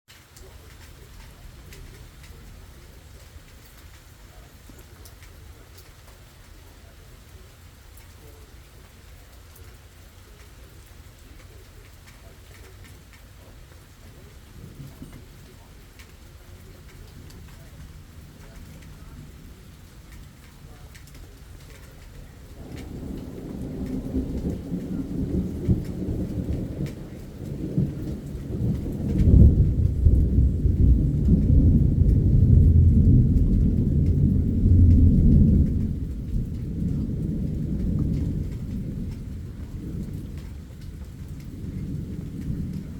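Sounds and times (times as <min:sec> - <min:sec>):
steady rain: 0:00.1 - 0:42.9
thunder rolling: 0:11.4 - 0:42.9.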